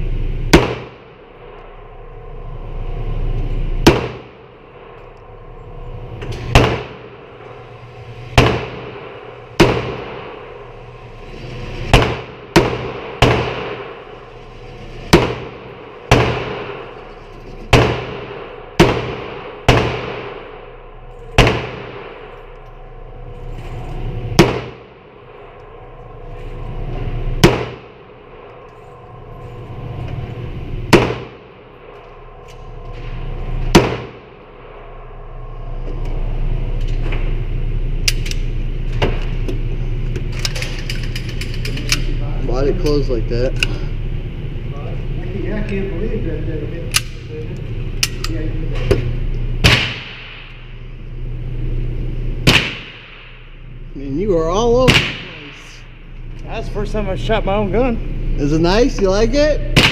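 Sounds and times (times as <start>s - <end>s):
steady low hum: 0.0s - 59.9s
gunshots with echo: 0.5s - 1.1s, 3.8s - 4.4s, 6.5s - 7.2s, 8.4s - 10.5s, 11.9s - 14.0s, 17.7s - 20.6s, 21.4s - 22.3s, 24.4s - 25.0s, 27.4s - 28.0s, 30.9s - 31.5s, 33.7s - 34.8s, 49.6s - 50.5s, 52.4s - 53.4s, 54.8s - 55.8s.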